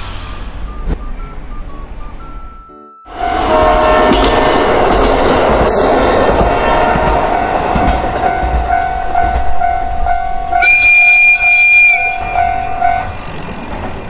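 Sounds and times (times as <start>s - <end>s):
high whistle-like tone: 0.3s - 4.1s, 10.6s - 13.1s
pulsing electronic tone: 0.6s - 4.2s.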